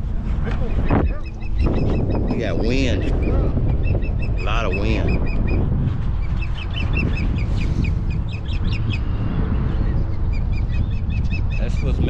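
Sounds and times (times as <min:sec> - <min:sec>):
wind rumble on microphone: 0:00.0 - 0:12.0
ospreys chirping: 0:00.6 - 0:12.0.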